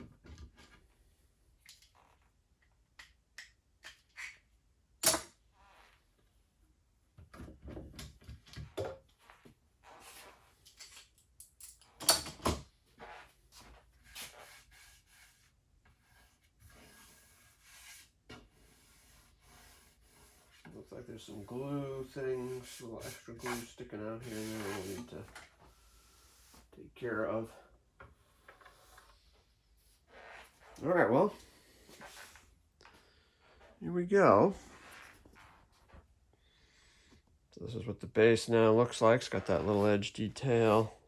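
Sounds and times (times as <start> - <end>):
knocks and clunks of handling: 0.0 - 0.9, 7.2 - 9.1.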